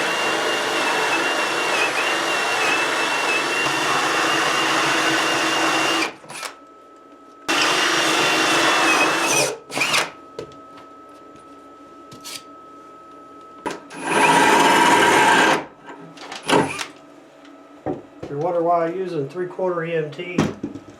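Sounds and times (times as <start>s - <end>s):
power tool motor whine: 0.0s - 6.6s, 7.5s - 10.2s, 13.9s - 15.6s, 16.4s - 16.9s.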